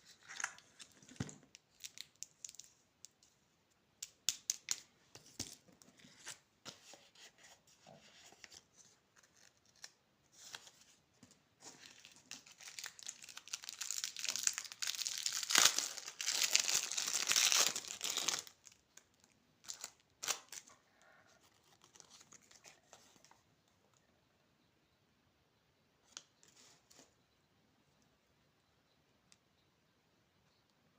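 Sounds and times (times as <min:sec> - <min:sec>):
candy wrapper crinkling and tearing: 0:00.2 - 0:03.1, 0:11.6 - 0:20.8.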